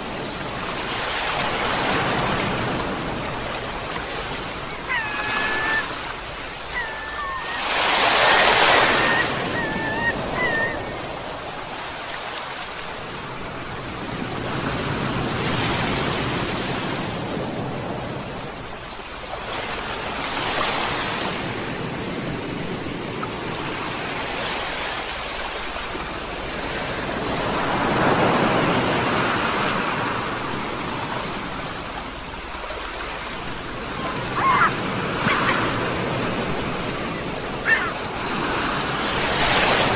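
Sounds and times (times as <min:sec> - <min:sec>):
sea waves washing onto shore: 0:00.0 - 0:39.9
seagull calls: 0:04.5 - 0:11.4, 0:34.0 - 0:35.9, 0:36.9 - 0:38.4.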